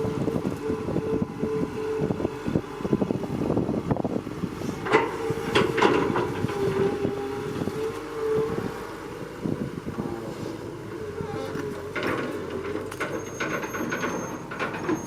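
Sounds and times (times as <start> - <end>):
excavator engine and hydraulics: 0.0 - 15.0
rattling clatter: 11.8 - 15.0.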